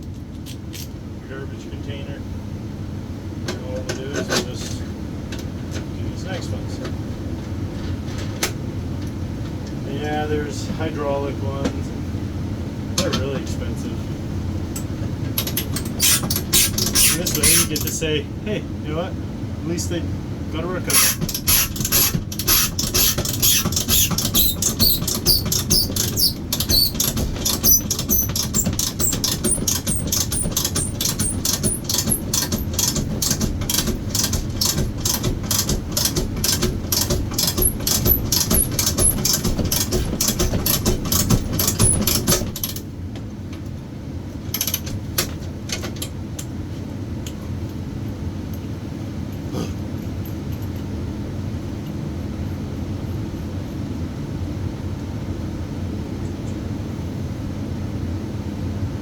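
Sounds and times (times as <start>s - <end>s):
steady low hum: 0.0s - 59.0s
ratchet wrench clicking: 15.4s - 18.0s, 20.9s - 42.8s.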